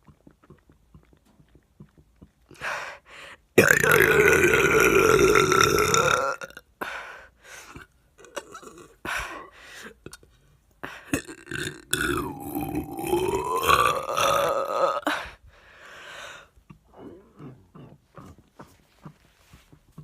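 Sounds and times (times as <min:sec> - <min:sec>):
person belching loudly: 0:03.6 - 0:06.6, 0:08.2 - 0:09.0, 0:11.1 - 0:15.2.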